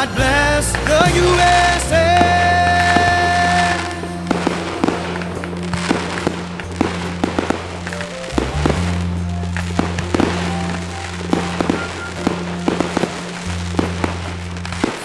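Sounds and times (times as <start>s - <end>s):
instrumental music: 0.0s - 15.0s
fireworks bangs and pops: 0.2s - 15.0s.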